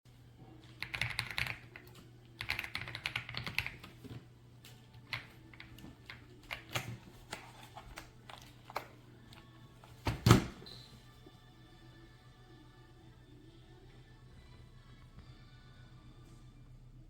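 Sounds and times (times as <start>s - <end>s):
mechanical keyboard typing: 0.8s - 4.0s, 5.1s - 7.0s.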